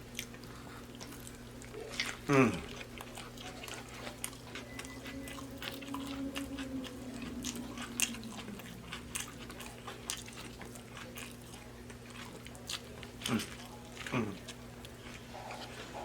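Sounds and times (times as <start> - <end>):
chewing and biting food: 0.0 - 16.0
low hum: 0.5 - 10.9.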